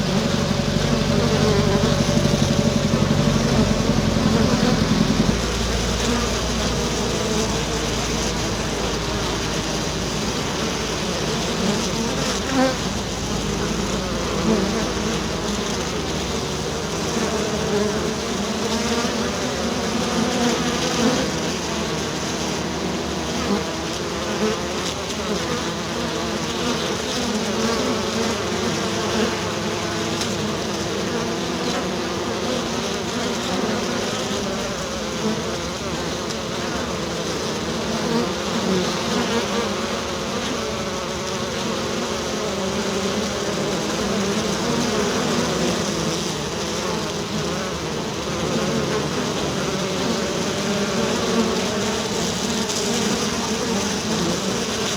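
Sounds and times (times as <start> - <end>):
bees buzzing: 0.0 - 54.9.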